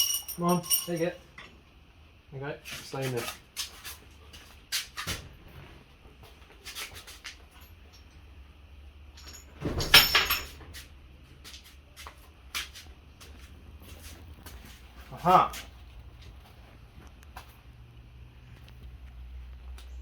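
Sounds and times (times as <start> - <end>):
metal pushrods clinking: 0.0 - 1.2.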